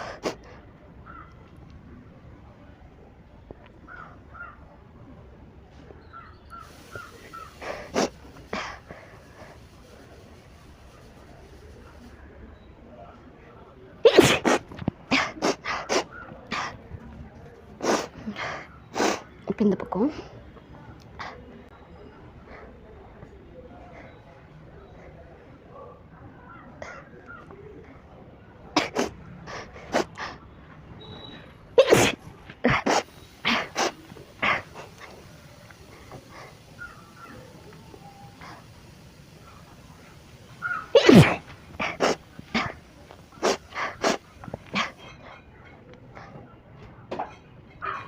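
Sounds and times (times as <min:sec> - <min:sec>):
short breathy bursts: 0:00.0 - 0:00.8, 0:06.5 - 0:12.4, 0:17.8 - 0:19.4, 0:28.8 - 0:30.5, 0:31.5 - 0:45.4
woman sneezing loudly: 0:14.0 - 0:16.0, 0:31.8 - 0:34.6, 0:40.9 - 0:42.8.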